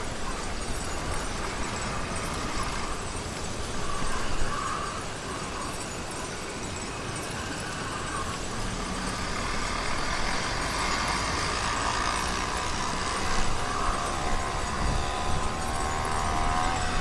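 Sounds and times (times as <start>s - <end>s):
two-stroke engine running: 8.4s - 17.0s.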